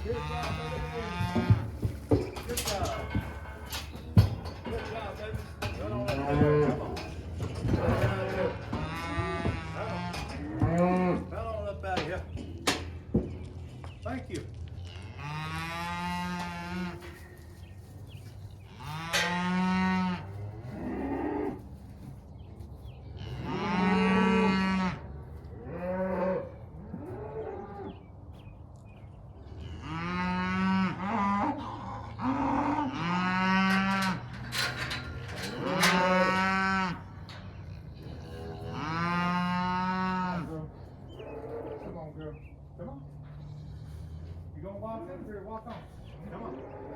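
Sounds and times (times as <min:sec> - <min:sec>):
cattle mooing: 0:00.0 - 0:11.5, 0:14.7 - 0:17.2, 0:18.7 - 0:21.7, 0:23.2 - 0:28.0, 0:29.5 - 0:42.1.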